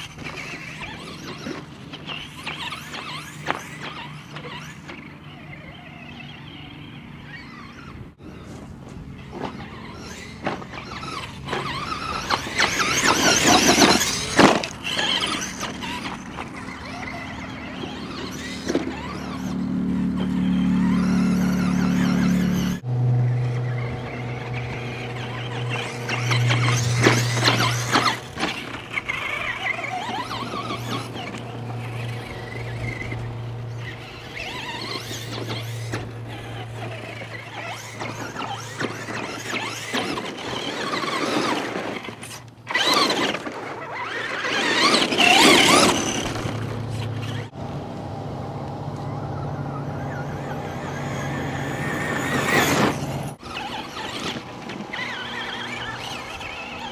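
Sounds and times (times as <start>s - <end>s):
steady low hum: 0.0s - 40.3s
rc car motors whining: 0.0s - 48.2s, 48.9s - 56.9s.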